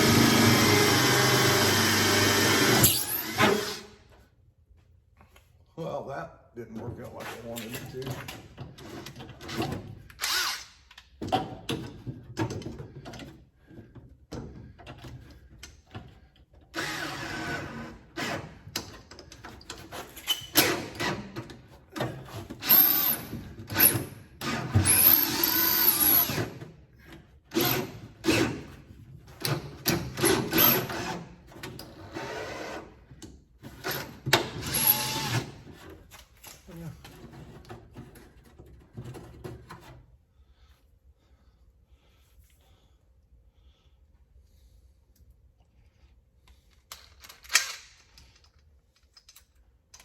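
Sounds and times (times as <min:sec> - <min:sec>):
electric drill boring sheet metal: 0:00.0 - 0:03.8.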